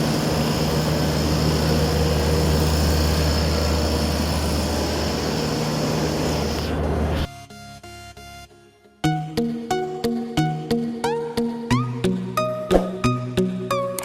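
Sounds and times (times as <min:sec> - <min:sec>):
electric motor humming: 0:00.0 - 0:07.2
high whine: 0:00.0 - 0:09.8.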